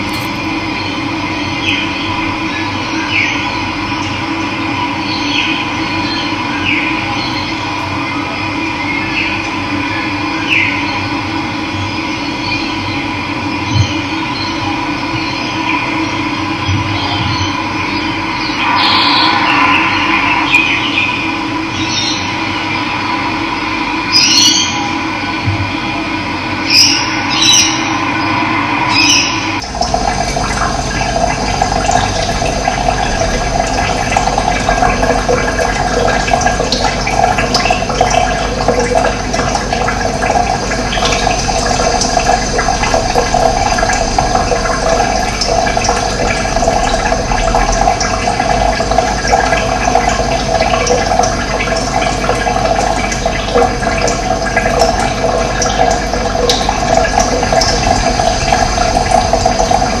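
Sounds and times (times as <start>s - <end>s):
running water flowing: 0.0s - 3.2s, 26.6s - 60.0s.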